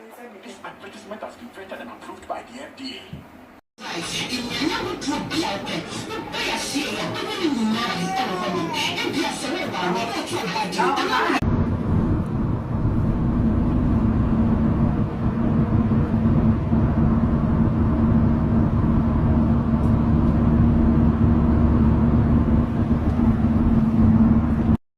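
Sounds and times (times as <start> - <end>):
vehicle engine drone: 11.4 - 24.8.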